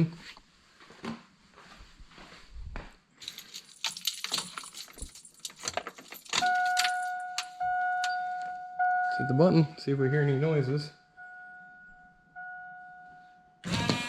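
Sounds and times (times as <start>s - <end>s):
keys jangling: 3.2s - 8.2s
electronic warning chime: 6.4s - 13.7s.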